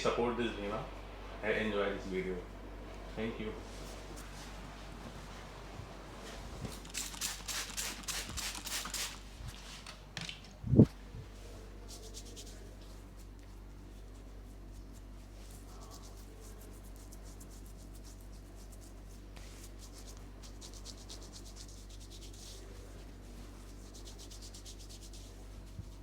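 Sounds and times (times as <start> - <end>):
low electrical hum: 0.0 - 26.0
hands rubbing through hair: 6.2 - 9.8, 11.9 - 26.0.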